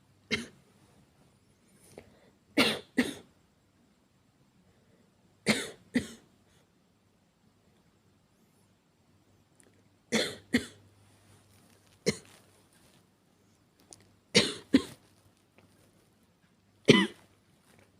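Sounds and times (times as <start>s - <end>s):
woman coughing: 0.3s - 0.6s, 2.6s - 3.3s, 5.5s - 6.2s, 10.1s - 10.8s, 12.0s - 12.4s, 14.4s - 15.0s, 16.9s - 17.2s.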